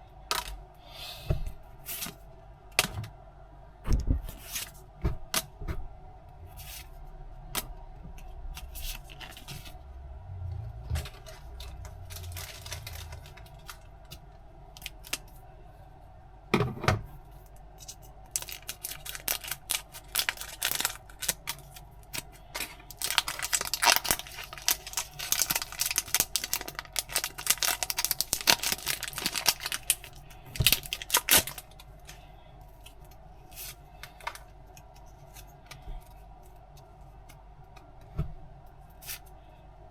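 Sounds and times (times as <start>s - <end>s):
packaging tearing and crinkling: 11.2s - 13.8s, 17.8s - 31.8s.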